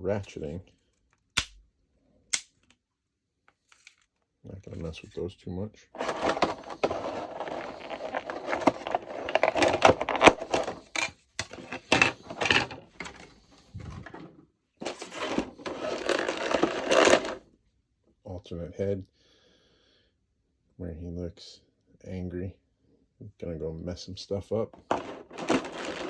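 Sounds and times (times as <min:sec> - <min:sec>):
plastic packaging rustling and clicking: 0:06.0 - 0:17.4, 0:24.8 - 0:26.0.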